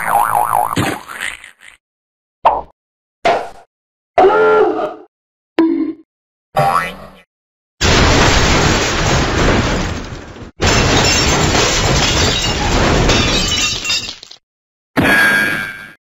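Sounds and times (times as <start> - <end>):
glass shattering: 7.8 - 14.4.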